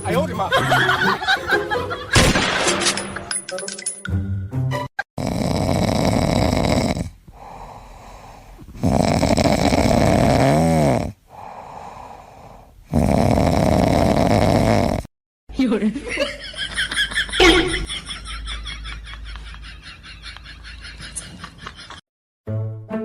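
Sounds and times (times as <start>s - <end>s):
loud snoring: 5.1s - 15.1s.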